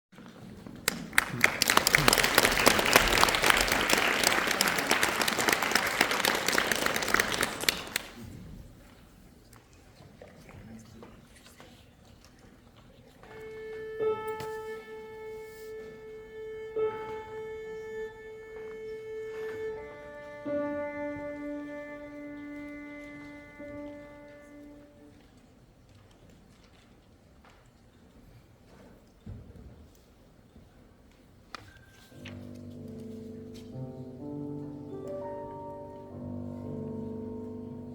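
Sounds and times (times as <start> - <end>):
audience applauding: 0.8 - 8.3
slow melody in long held notes: 13.3 - 25.2, 32.2 - 37.9.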